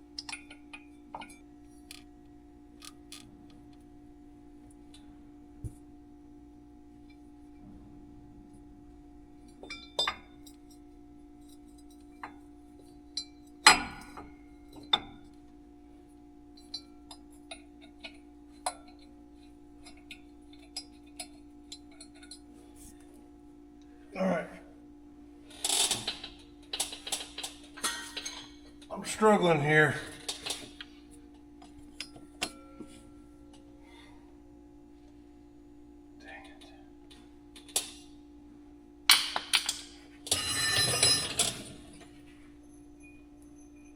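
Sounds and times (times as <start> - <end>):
steady low hum: 0.0 - 43.9
low hum: 0.3 - 17.6.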